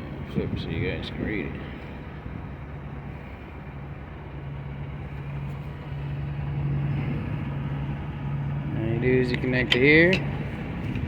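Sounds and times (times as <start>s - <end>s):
engine idling: 0.0s - 11.0s.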